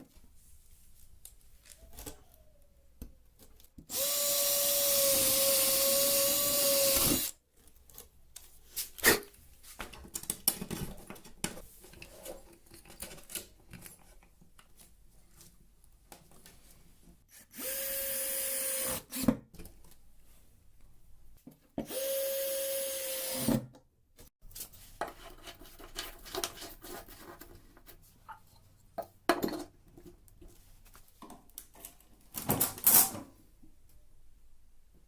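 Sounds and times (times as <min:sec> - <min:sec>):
power tool motor whining: 0:03.9 - 0:07.3.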